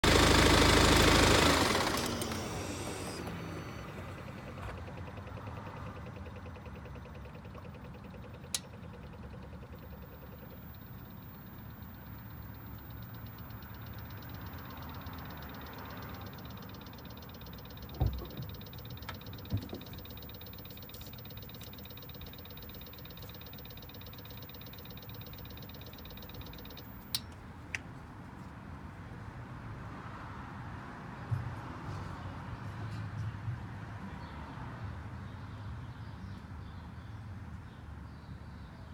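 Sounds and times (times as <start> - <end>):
diesel engine shutting off: 0.0 - 27.2
low hum: 0.0 - 27.2
sharp click under car: 12.7 - 27.9.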